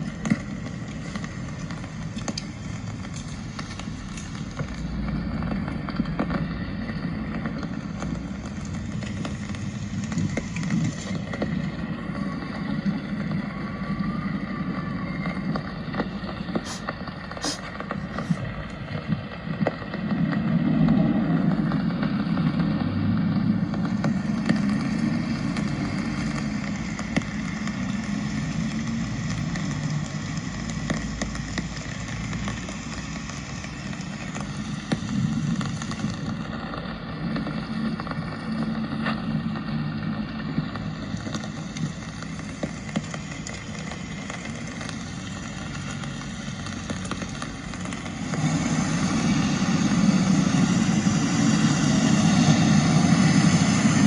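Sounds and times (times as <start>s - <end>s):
raindrop ticks: 0.0s - 13.5s, 23.6s - 49.0s
low traffic rumble: 0.0s - 54.0s
falling rain hiss: 15.7s - 18.7s, 24.2s - 54.0s.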